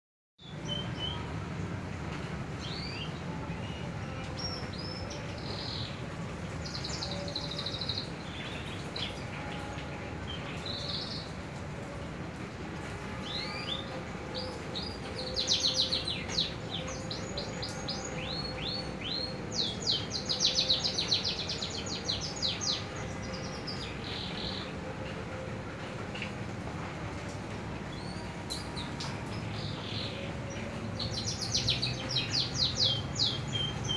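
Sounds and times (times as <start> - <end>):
small songbirds chirping: 2.6 - 11.4, 13.2 - 25.4, 27.9 - 33.9.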